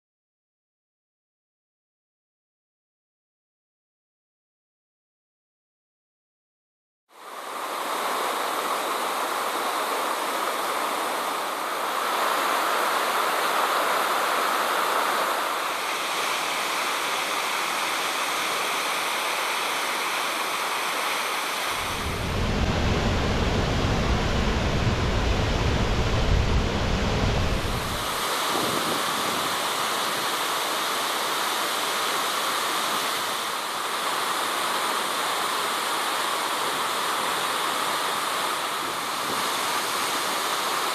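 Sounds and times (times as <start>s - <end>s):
waterfall rushing: 7.2s - 40.9s
deep low rumble: 21.8s - 28.0s.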